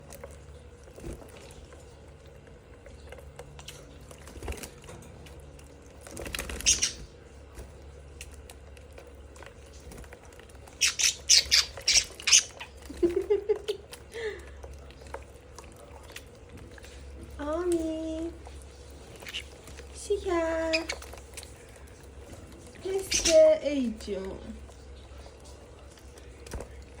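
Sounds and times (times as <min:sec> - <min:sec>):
budgerigars squawking: 0:06.6 - 0:07.0, 0:10.8 - 0:12.8.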